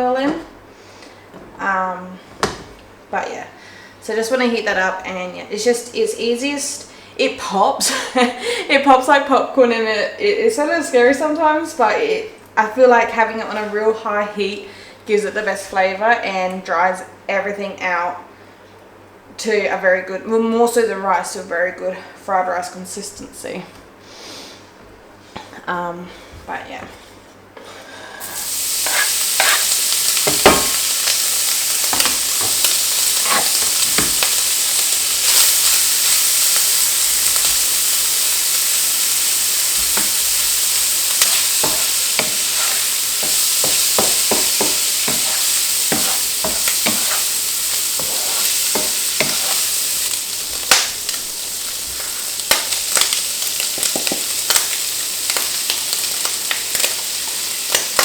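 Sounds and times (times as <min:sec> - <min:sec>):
food sizzling in oil: 0:28.2 - 0:58.0
oil popping and crackling: 0:28.3 - 0:58.0.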